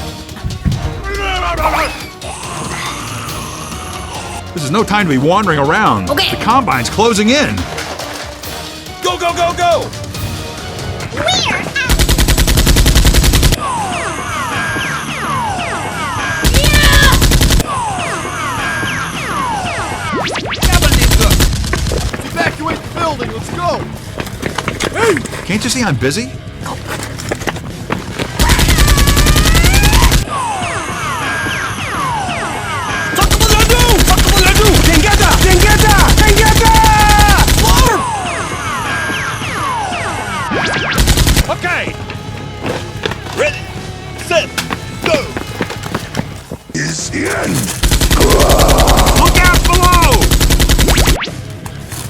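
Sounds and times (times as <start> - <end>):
rapid automatic gunfire: 11.9 - 13.6, 16.4 - 17.6, 20.6 - 22.0, 28.4 - 30.2, 33.2 - 38.0, 41.0 - 41.5, 47.8 - 51.2
rapid machine-gun fire: 11.9 - 13.6, 16.4 - 17.7, 20.6 - 22.1, 28.4 - 30.2, 33.2 - 38.0, 41.0 - 41.5, 47.8 - 51.2.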